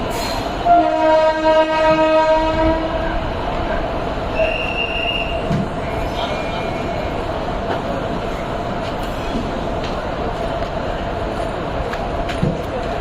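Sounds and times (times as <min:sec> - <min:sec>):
train running: 0:00.0 - 0:13.0
locomotive horn blast: 0:00.6 - 0:03.1
high squeal: 0:04.4 - 0:07.1.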